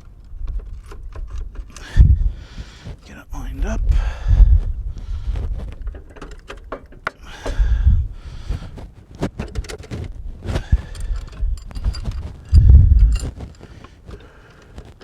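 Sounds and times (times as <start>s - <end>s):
low rumbling thumps: 0.5s - 6.0s, 7.2s - 13.5s
metal parts clicking and clinking: 5.8s - 7.2s, 9.4s - 10.1s, 10.8s - 13.9s.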